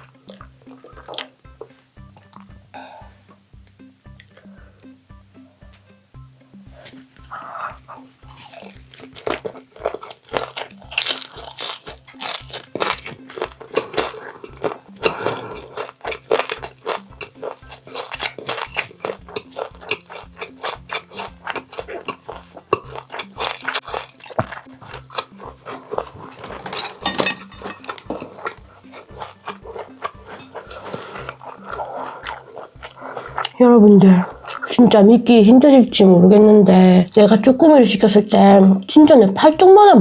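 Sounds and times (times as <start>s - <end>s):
wet crunchy chewing: 0.0s - 2.6s, 3.3s - 5.0s, 6.6s - 37.6s
background music with steady beat: 0.0s - 40.0s.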